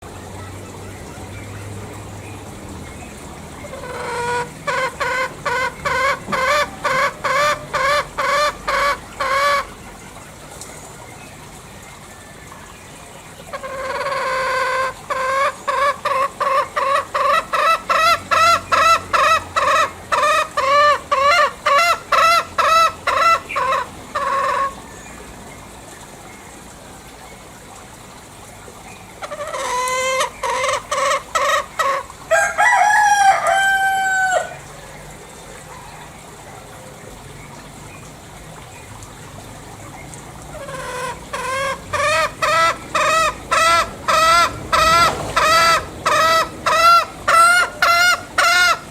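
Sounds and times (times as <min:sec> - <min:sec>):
junglefowl cackling: 0:03.6 - 0:10.3, 0:13.5 - 0:25.1, 0:29.2 - 0:36.2, 0:40.5 - 0:48.9.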